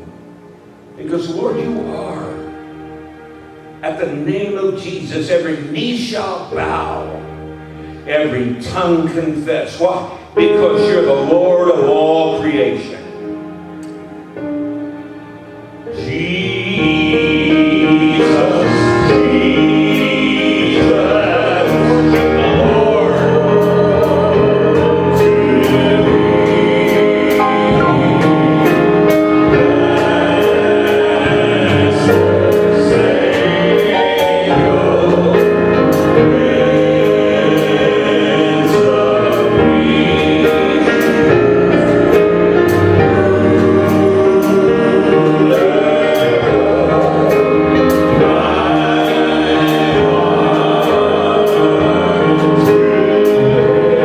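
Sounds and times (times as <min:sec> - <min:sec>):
instrumental backing with steady beat: 0:13.1 - 0:54.0
group of voices singing: 0:15.9 - 0:54.0.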